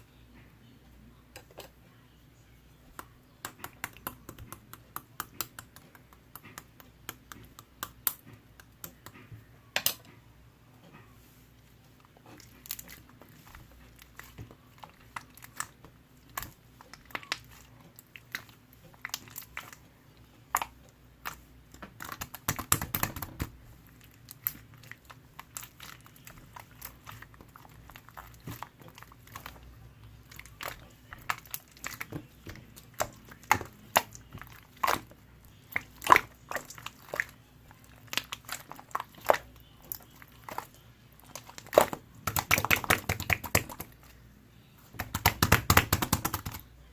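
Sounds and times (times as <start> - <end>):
slime squished by hand: 35.7 - 44.0, 44.9 - 46.6.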